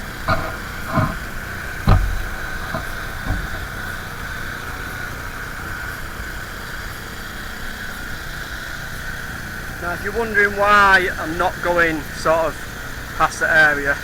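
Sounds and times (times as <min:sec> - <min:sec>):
light knocks: 0:00.0 - 0:04.5
pressure washer running: 0:00.0 - 0:14.0
thump: 0:00.3 - 0:03.9.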